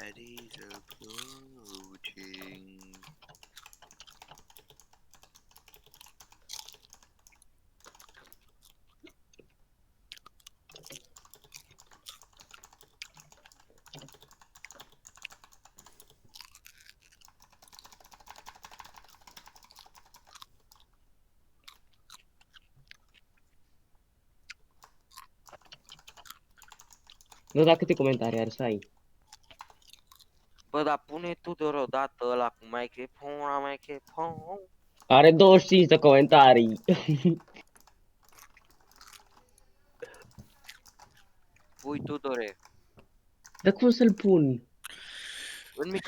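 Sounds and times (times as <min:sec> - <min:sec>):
typing on computer keyboard: 0:00.0 - 0:08.8, 0:10.7 - 0:20.9, 0:24.8 - 0:30.2, 0:35.0 - 0:44.4.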